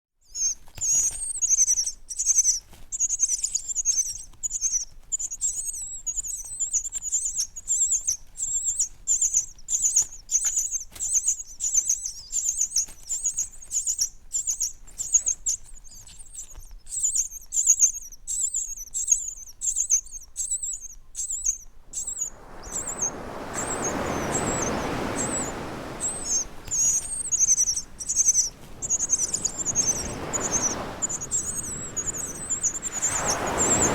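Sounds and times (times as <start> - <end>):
small birds chirping: 0.2 - 33.9
sea wave washing in: 21.9 - 33.9.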